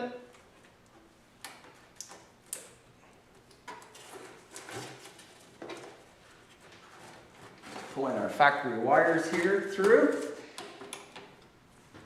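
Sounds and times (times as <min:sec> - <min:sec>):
scrapes and knocks of parts: 0:03.3 - 0:08.3.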